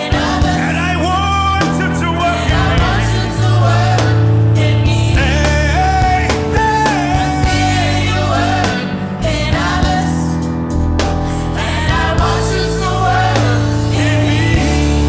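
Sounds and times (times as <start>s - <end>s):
person singing gospel song: 0.0s - 10.5s, 11.2s - 15.0s
sustained instrumental backing: 0.0s - 15.0s.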